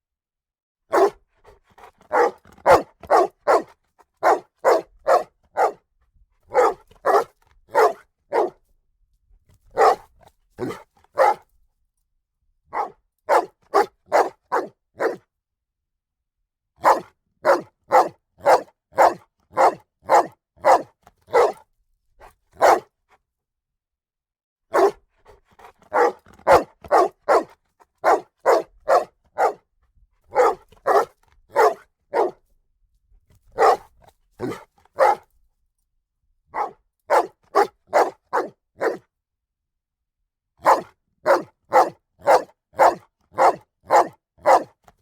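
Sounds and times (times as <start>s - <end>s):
dog barking loudly: 0.9s - 1.2s, 1.8s - 5.8s, 6.5s - 8.6s, 9.7s - 11.4s, 12.7s - 15.2s, 16.8s - 21.6s, 22.6s - 22.9s, 24.7s - 25.0s, 25.6s - 29.6s, 30.3s - 32.4s, 33.6s - 35.2s, 36.5s - 39.0s, 40.6s - 44.7s.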